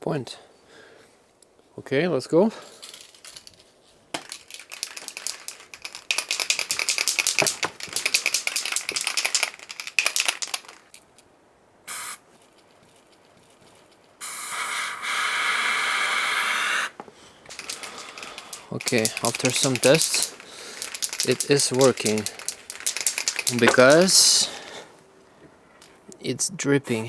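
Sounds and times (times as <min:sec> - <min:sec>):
spray can ball rattling: 0:02.6 - 0:11.2, 0:11.9 - 0:15.2, 0:17.5 - 0:24.9
aerosol spraying: 0:11.9 - 0:12.2.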